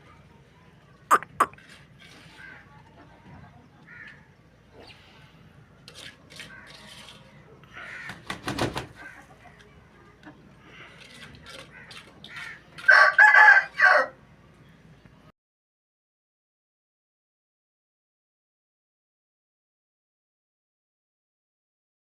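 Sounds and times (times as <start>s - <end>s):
fowl calls: 1.1s - 3.1s
rooster crowing: 12.9s - 14.2s.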